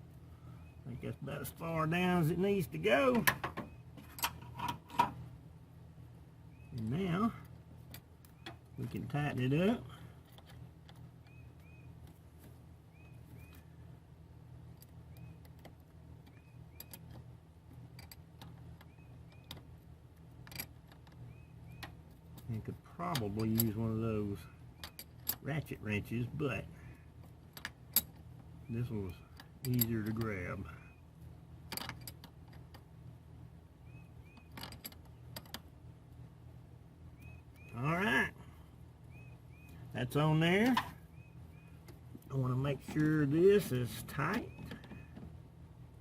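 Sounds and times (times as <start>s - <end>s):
bird chirps: 0.4s - 1.2s, 3.5s - 4.0s, 6.4s - 7.0s, 11.1s - 12.2s, 12.8s - 14.0s, 14.9s - 15.6s, 16.2s - 17.1s, 18.6s - 19.7s, 21.2s - 22.2s, 33.8s - 35.3s, 37.0s - 42.5s, 44.0s - 45.2s.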